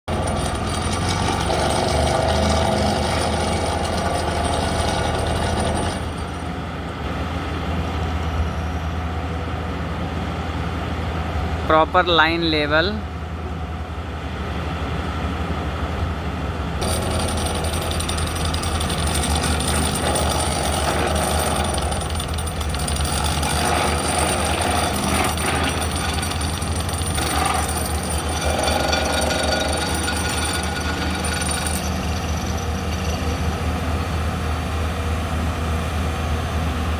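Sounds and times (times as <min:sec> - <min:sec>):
high metallic clatter: 0:00.0 - 0:06.6, 0:16.8 - 0:33.6
vibratory hammer pulsing: 0:16.8 - 0:32.5.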